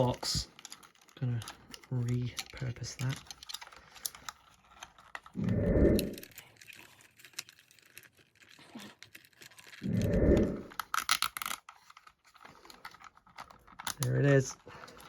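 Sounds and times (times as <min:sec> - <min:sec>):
muffled low rumbles: 0:05.4 - 0:06.2, 0:09.8 - 0:10.7.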